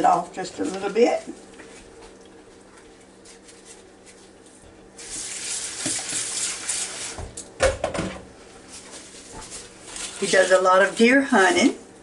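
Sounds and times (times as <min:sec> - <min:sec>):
faucet water running into sink: 0:05.0 - 0:07.4.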